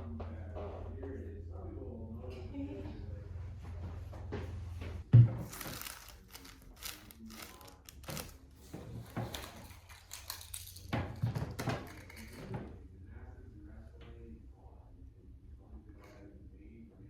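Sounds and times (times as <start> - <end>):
rustling: 5.4 - 11.0.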